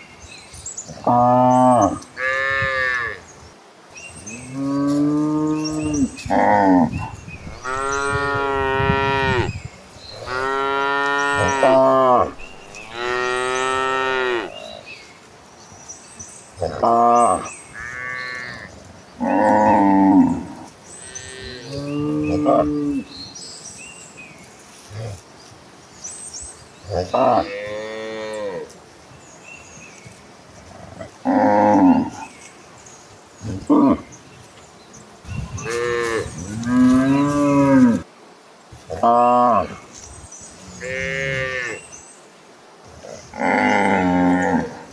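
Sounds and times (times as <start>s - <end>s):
cattle mooing: 4.7s - 9.5s, 10.2s - 14.6s, 35.7s - 38.0s.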